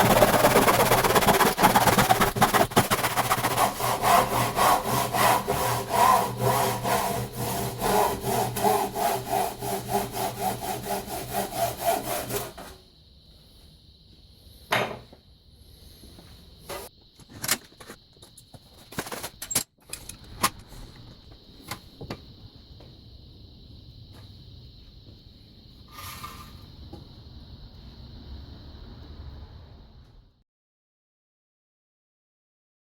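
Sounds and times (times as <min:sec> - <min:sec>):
hand saw cutting wood: 0:00.0 - 0:12.8.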